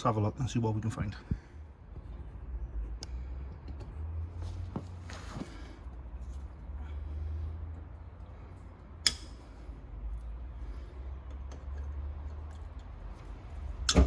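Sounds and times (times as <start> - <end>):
sharp metallic clicks: 9.0 - 9.4.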